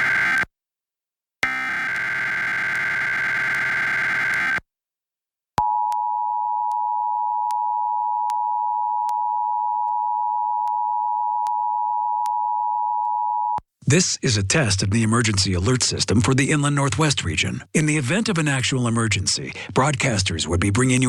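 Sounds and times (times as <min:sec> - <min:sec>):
harsh digital data burst: 0:00.0 - 0:00.4, 0:01.4 - 0:04.6.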